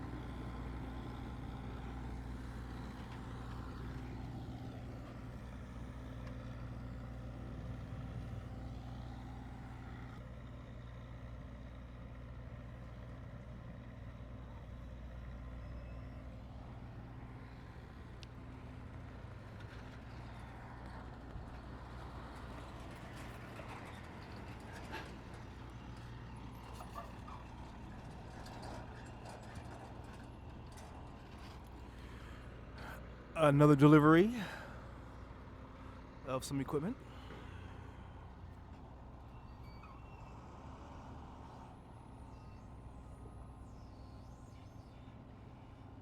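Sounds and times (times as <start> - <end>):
large vehicle engine running: 0.0 - 15.6
street and site noise: 0.0 - 46.0.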